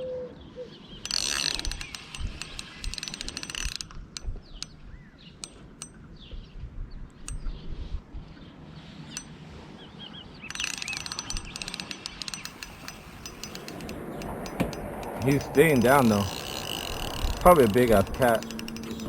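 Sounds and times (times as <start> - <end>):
fishing reel drag clicking: 1.0 - 4.8, 10.5 - 19.0.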